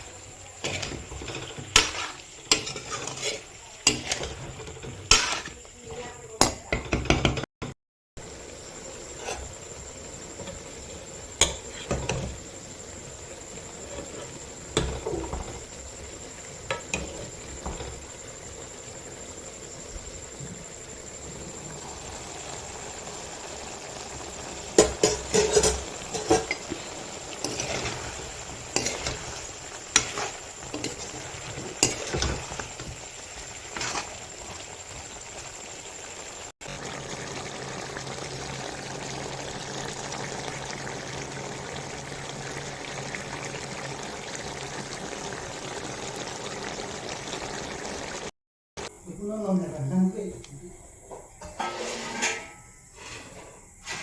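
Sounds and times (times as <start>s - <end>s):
food cooking hiss: 0.0s - 7.4s, 8.2s - 54.0s
spoon clinking and scraping pot: 0.6s - 5.6s, 11.4s - 12.4s, 24.8s - 34.2s, 51.4s - 54.0s.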